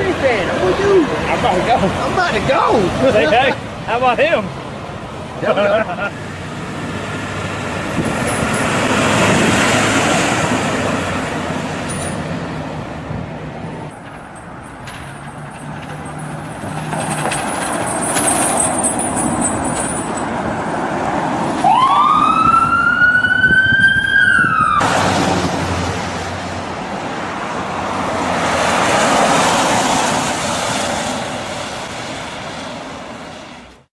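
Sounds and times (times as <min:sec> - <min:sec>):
vehicles passing: 0:00.0 - 0:33.9
ambulance siren wailing: 0:21.6 - 0:24.9.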